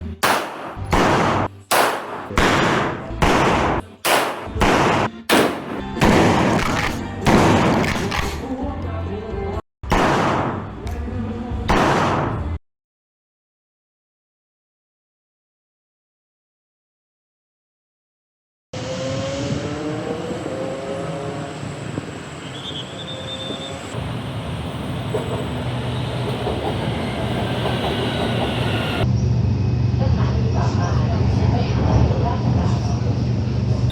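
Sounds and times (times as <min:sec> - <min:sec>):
loud echoing gunshots: 0:00.2 - 0:08.4, 0:09.8 - 0:10.8, 0:11.7 - 0:12.6
background music with bass: 0:00.8 - 0:09.6
train running rumble and rattle: 0:19.2 - 0:33.9.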